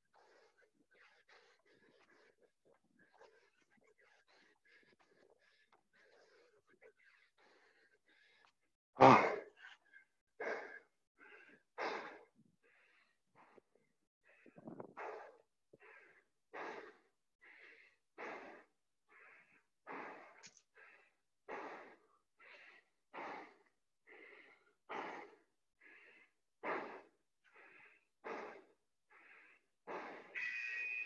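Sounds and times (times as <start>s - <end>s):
person breathing heavily: 0.0s - 31.0s.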